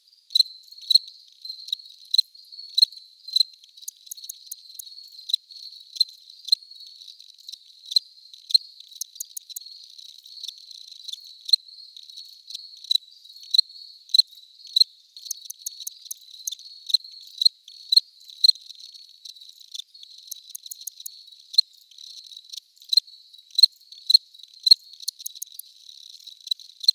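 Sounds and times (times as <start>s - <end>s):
crickets chirping: 0.2s - 26.9s.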